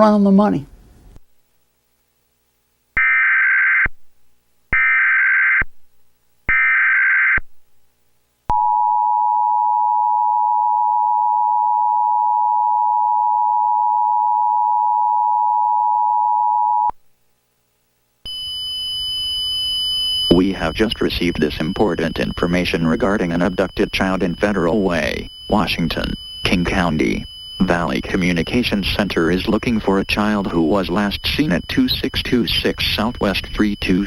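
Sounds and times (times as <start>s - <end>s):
screechy digital data tones: 18.3s - 34.0s
two-tone attention signal: 20.2s - 34.0s.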